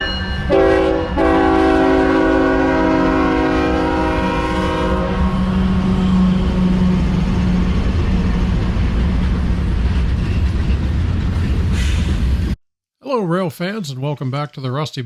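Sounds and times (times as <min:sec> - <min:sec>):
locomotive engines rumbling: 0:00.2 - 0:12.5
train air horn blasts: 0:00.5 - 0:07.0.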